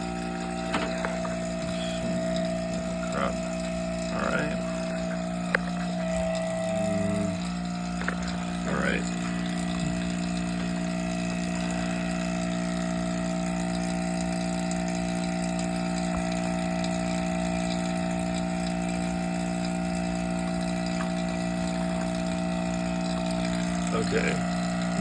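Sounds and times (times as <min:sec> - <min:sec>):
vacuum pump humming: 0:00.0 - 0:25.0.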